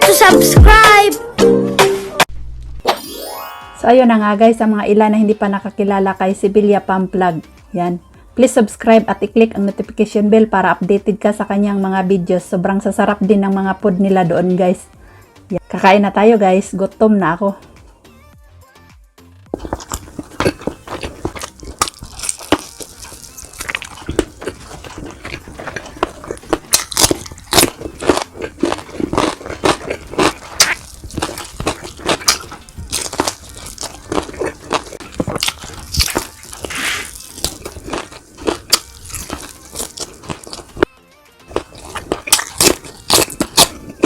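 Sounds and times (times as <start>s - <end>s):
chewing and crunching food: 19.5s - 40.9s, 41.5s - 44.0s.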